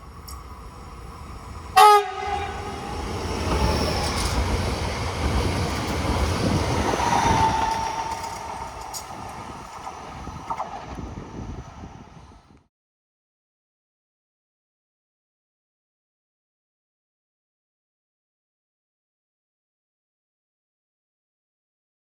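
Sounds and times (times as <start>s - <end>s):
train rumbling past: 0.0s - 12.6s
train horn blast: 1.8s - 3.0s.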